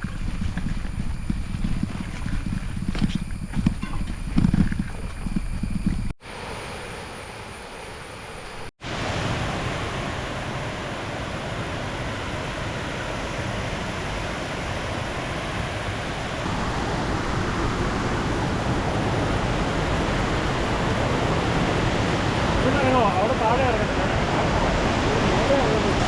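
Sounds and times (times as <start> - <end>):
waterfall rushing: 8.8 - 26.0.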